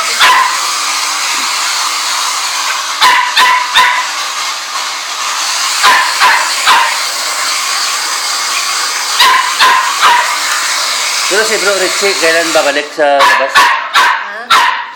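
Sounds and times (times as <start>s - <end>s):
small dog barking: 0.2s - 0.6s, 3.0s - 4.1s, 5.8s - 7.0s, 9.2s - 10.4s, 13.2s - 14.9s.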